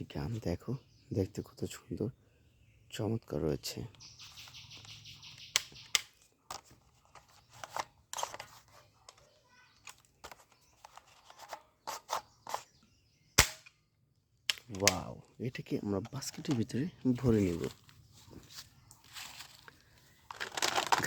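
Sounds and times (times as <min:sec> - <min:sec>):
plastic toy gun clicks: 0:05.5 - 0:06.6.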